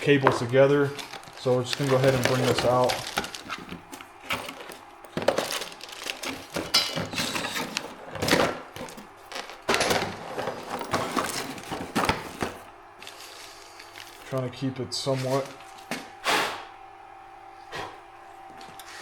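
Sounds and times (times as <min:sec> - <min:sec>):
packaging crinkling: 0:00.0 - 0:14.4
packaging being unboxed: 0:00.0 - 0:14.5.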